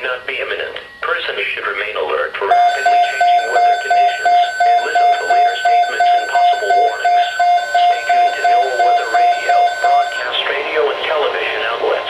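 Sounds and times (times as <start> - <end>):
electronic alert beeping: 2.5 - 10.3.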